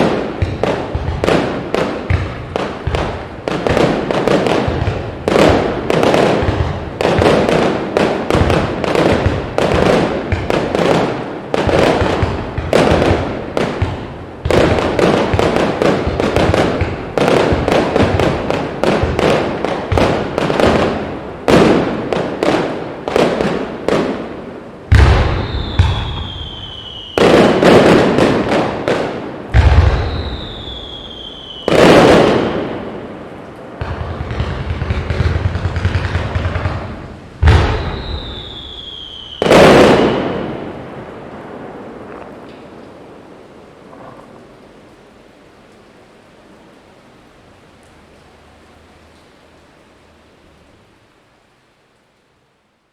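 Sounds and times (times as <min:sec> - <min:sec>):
heavy firework booms: 0:00.0 - 0:42.8
fireworks bangs and crackling: 0:00.0 - 0:45.1
falling firework whistle: 0:24.9 - 0:32.8, 0:34.4 - 0:40.7.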